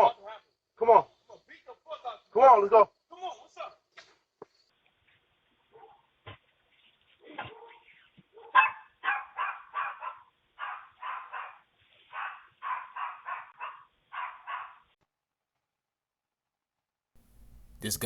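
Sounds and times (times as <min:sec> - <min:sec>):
dog barking: 0:05.7 - 0:06.1, 0:07.2 - 0:15.0.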